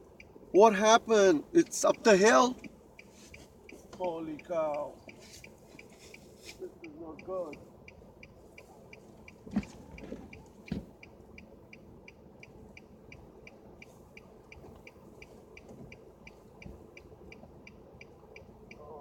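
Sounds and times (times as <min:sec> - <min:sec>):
car warning chime beeping: 0:00.0 - 0:19.0
dull thumps: 0:09.4 - 0:10.9.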